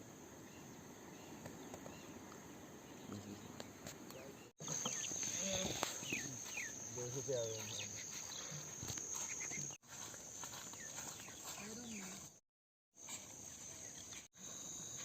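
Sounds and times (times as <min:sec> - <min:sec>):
crickets trilling: 0:04.1 - 0:12.3, 0:13.0 - 0:15.0.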